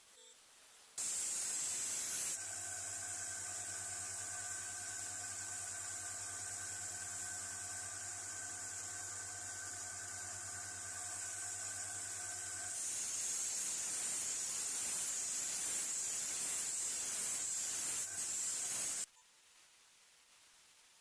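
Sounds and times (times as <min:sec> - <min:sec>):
abrasive hissing on metal: 0:01.0 - 0:19.1
motor hum: 0:02.4 - 0:14.0.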